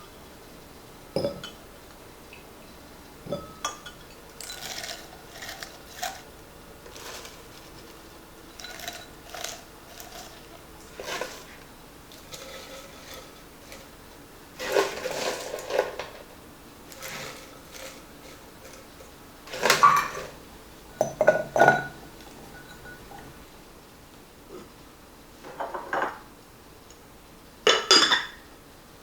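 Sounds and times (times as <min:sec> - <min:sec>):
glass jars clinking and knocking: 0:01.2 - 0:01.6, 0:03.3 - 0:06.3, 0:06.9 - 0:11.5, 0:19.5 - 0:20.4, 0:21.0 - 0:23.4, 0:27.7 - 0:28.4
glassy ring: 0:22.5 - 0:23.2.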